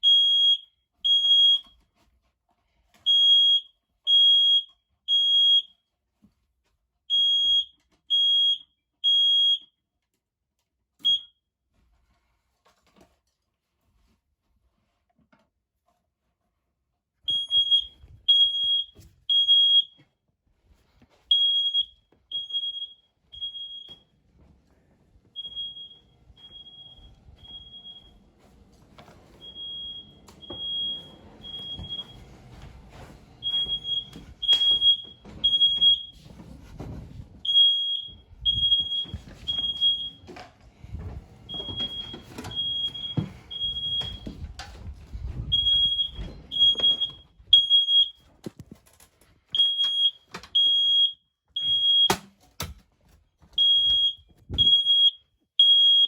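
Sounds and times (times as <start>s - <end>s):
smoke alarm beeping: 0.0s - 1.8s, 3.1s - 5.8s, 7.1s - 9.8s, 11.0s - 11.4s, 17.3s - 20.0s, 21.3s - 24.2s, 25.3s - 28.4s, 29.0s - 36.4s, 37.4s - 40.5s, 41.4s - 44.8s, 45.5s - 48.3s, 49.5s - 52.3s, 53.6s - 56.0s
knocks and rustling: 27.2s - 47.6s.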